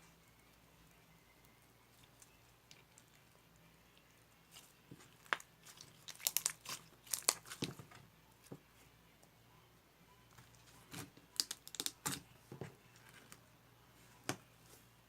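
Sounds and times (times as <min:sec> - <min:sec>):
crinkling handling noise: 0:04.5 - 0:08.1.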